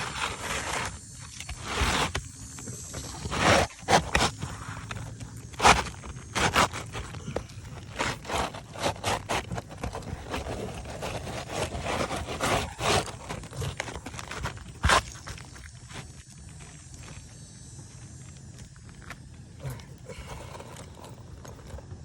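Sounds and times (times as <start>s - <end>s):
roof shingle scraping: 0.0s - 17.2s.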